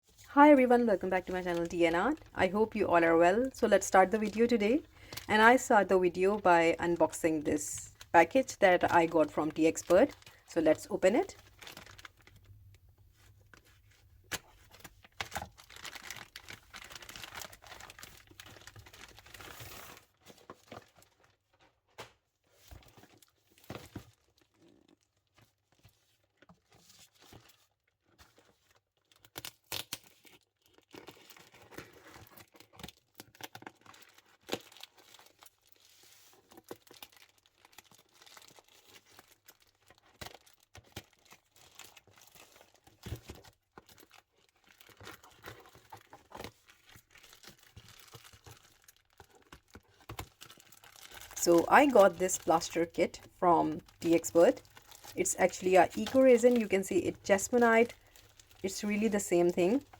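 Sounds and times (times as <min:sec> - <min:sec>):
packaging crinkling: 0:07.9 - 0:21.8, 0:27.0 - 0:59.9
wrapping tearing and rustling: 0:07.9 - 0:59.9.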